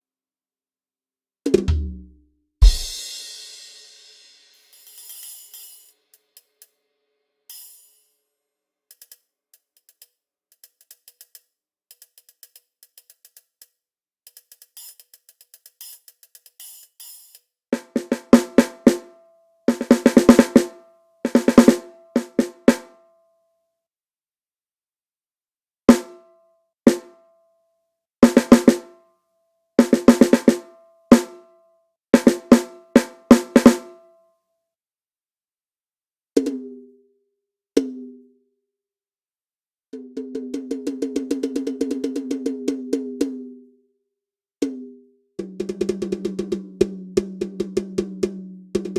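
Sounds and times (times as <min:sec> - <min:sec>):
snare drum rolls and fills: 0:01.5 - 0:04.0.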